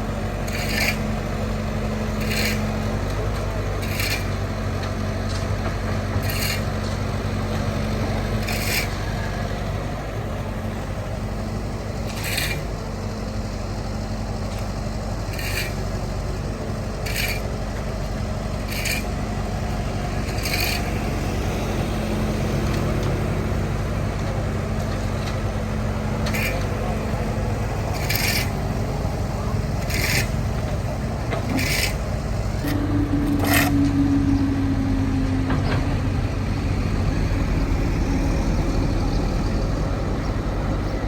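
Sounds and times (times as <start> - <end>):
diesel engine running: 0.0 - 41.0
short scraping hissing sounds: 6.2 - 6.7, 12.1 - 12.6, 15.3 - 15.8, 26.3 - 26.6.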